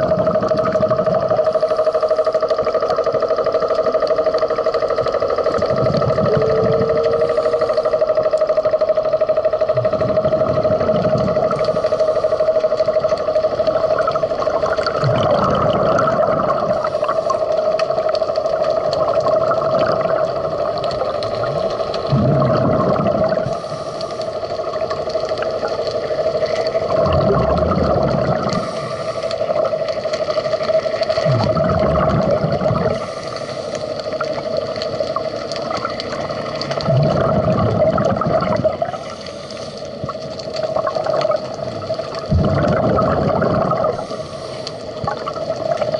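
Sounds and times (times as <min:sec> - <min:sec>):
exhaled bubbles gushing: 0:00.0 - 0:08.8, 0:09.6 - 0:45.9
steady underwater hum: 0:00.0 - 0:45.9
diver breathing through regulator: 0:22.1 - 0:24.4, 0:26.9 - 0:29.7, 0:31.3 - 0:34.2, 0:38.7 - 0:40.2, 0:42.4 - 0:45.1.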